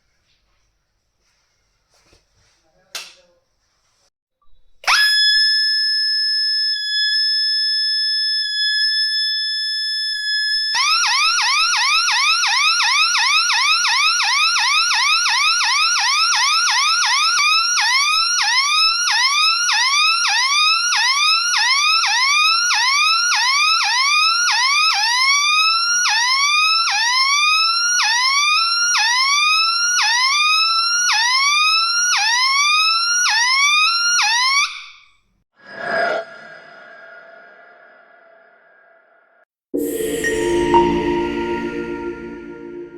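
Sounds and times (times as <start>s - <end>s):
electronic alarm hooter: 10.5s - 16.5s, 39.8s - 42.9s.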